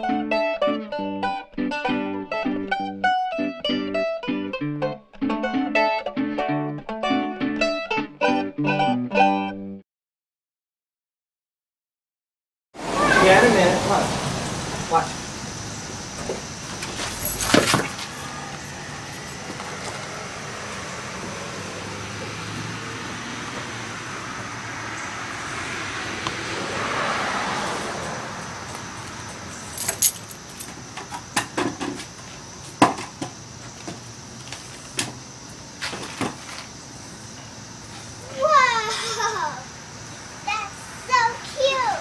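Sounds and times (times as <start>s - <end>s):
vehicle passing by: 12.8s - 31.0s, 33.4s - 42.0s.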